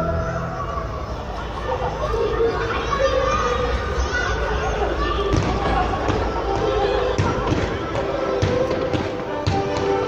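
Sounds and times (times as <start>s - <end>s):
fireworks bangs and thuds: 5.3s - 10.0s
music with held notes: 6.4s - 10.0s.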